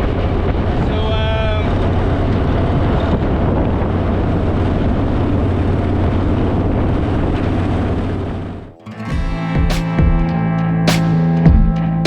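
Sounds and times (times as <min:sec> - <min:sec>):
heavy wind on microphone: 0:00.0 - 0:08.7
loud low engine drone: 0:00.0 - 0:09.4.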